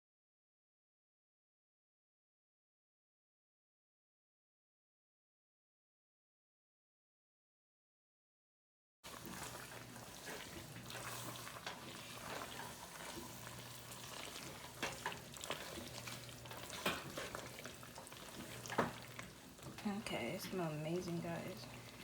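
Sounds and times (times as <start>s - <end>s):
sauce sizzling in a pan: 9.1s - 22.0s
utensil stirring and scraping: 9.1s - 22.0s
utensil clicking against pan: 14.4s - 19.8s.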